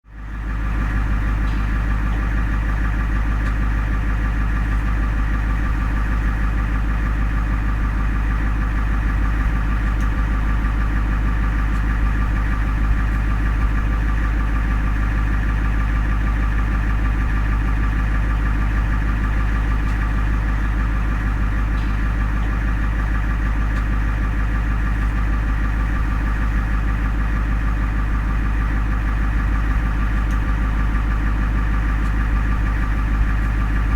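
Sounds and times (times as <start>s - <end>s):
engine idling with deep hum: 0.0s - 33.9s.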